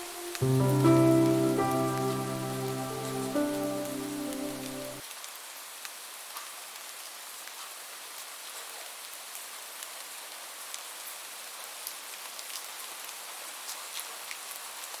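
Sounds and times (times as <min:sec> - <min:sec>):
rain hissing: 0:00.0 - 0:05.0.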